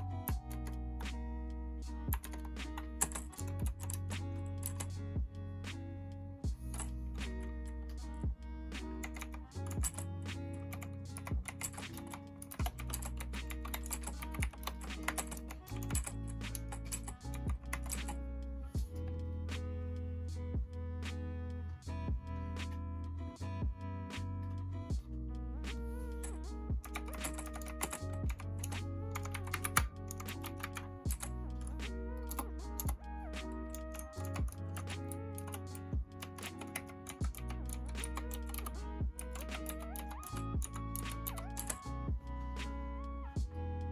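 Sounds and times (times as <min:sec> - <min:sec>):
lofi music with steady beat: 0:00.0 - 0:43.9
mechanical keyboard key clicks: 0:26.8 - 0:31.6, 0:33.7 - 0:41.8.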